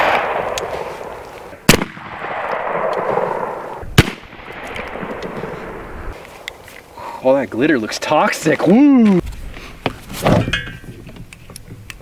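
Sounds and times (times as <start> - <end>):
air rifle shot: 0.0 - 1.1, 1.7 - 5.9.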